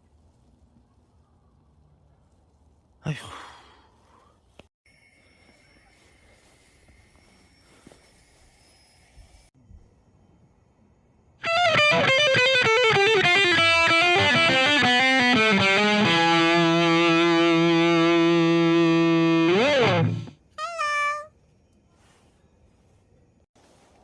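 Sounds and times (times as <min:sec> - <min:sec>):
distorted electric guitar: 0:11.4 - 0:20.4.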